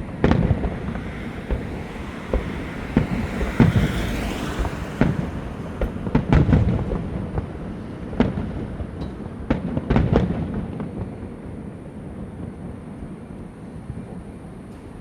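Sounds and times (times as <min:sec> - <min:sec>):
low rumbling echo: 0:00.0 - 0:09.0
fireworks bangs: 0:00.0 - 0:11.1.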